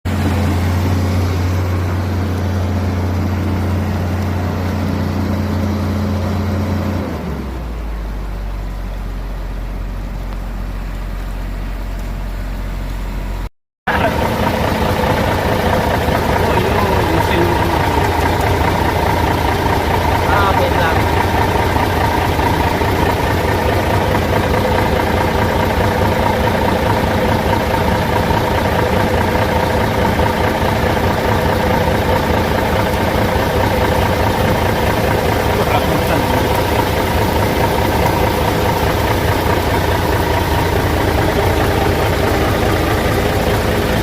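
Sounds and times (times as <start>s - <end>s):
heavy diesel engine running: 0.0s - 44.0s
voices: 16.3s - 18.8s, 20.2s - 21.2s, 35.2s - 36.9s.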